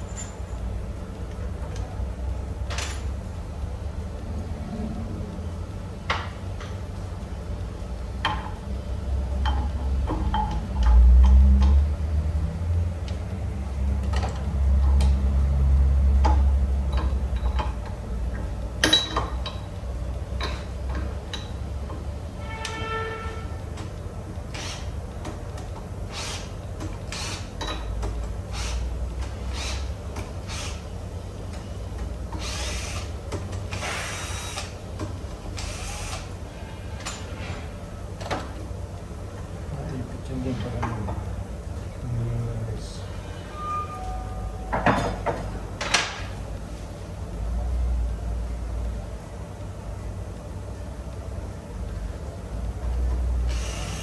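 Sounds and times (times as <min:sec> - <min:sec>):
low steady rumble: 0:00.0 - 0:25.8
steady low hum: 0:00.0 - 0:54.0.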